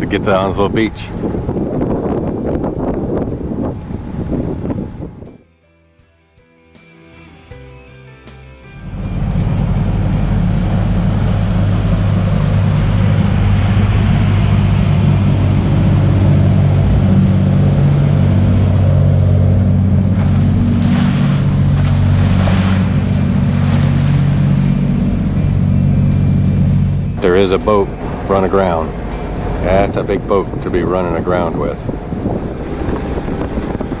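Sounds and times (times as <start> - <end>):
boat engine running: 0.0 - 5.4, 8.8 - 34.0
wind on microphone: 0.0 - 5.4, 8.9 - 34.0
rushing water: 8.8 - 34.0.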